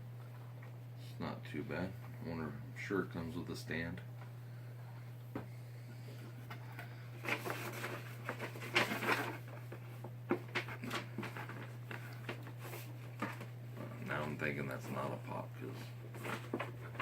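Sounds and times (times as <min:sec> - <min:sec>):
packaging rustling and crinkling: 0:06.4 - 0:17.0.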